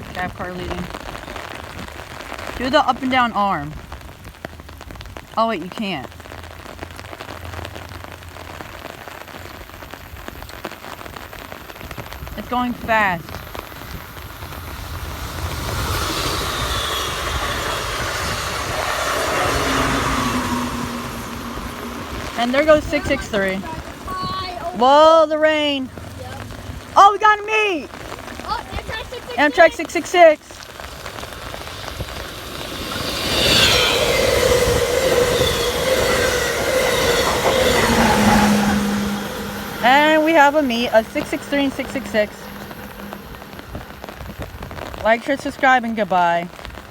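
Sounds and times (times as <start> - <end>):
wheels rushing on rail: 6.1 - 46.9
train passing at speed: 12.4 - 27.0, 27.7 - 45.6
thin steady whine: 12.4 - 45.9
low hum: 14.1 - 27.0, 30.8 - 45.0.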